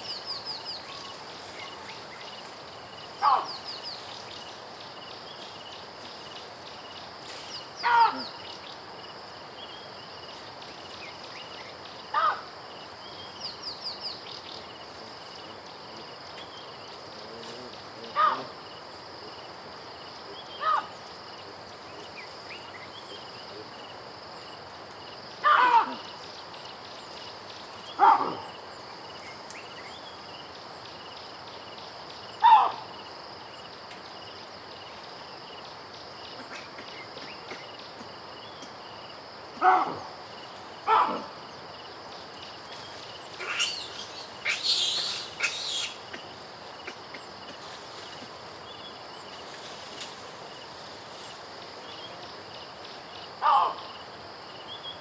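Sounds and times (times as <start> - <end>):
birds chirping: 0.0 - 8.8, 20.3 - 24.6, 40.7 - 49.5
baboon calling: 3.2 - 3.6, 7.8 - 8.4, 18.1 - 18.6, 25.4 - 26.1, 32.4 - 32.8, 40.8 - 41.4, 43.4 - 46.2, 53.4 - 53.9.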